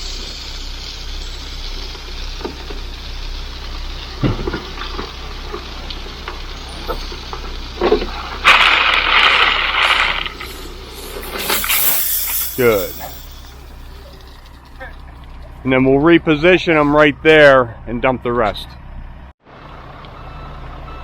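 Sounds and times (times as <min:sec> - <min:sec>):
dump truck running: 0:00.0 - 0:21.0
clunks of unloading stone: 0:04.1 - 0:14.4
loud rushing hiss: 0:08.5 - 0:13.9.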